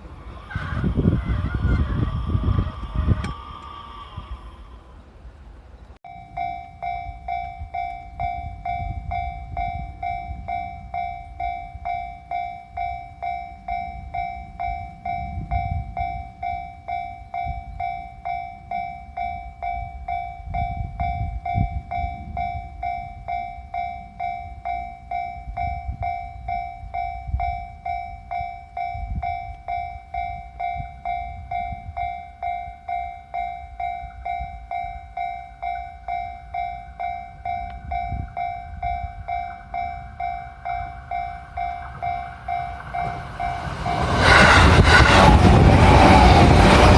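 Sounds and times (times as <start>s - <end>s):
level crossing warning bell: 6.0s - 46.9s
low rumble: 33.8s - 46.9s.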